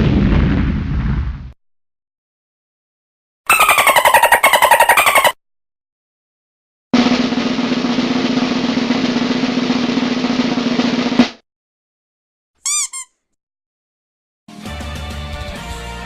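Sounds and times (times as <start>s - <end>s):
sharp snare drum hit: 7.0s - 11.4s
snare drum roll: 7.0s - 11.4s.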